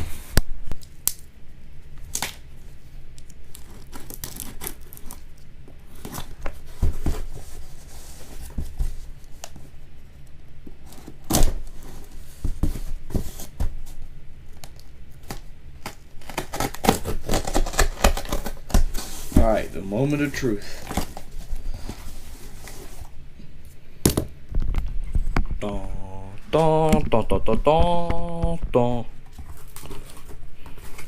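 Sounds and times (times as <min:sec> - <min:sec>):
packaging tearing and crinkling: 0:03.2 - 0:07.1, 0:14.6 - 0:21.9, 0:29.4 - 0:31.0.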